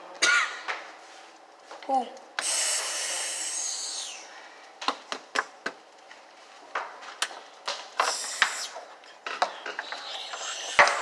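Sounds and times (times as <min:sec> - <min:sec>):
hard objects tapping and clicking: 0:09.2 - 0:11.0.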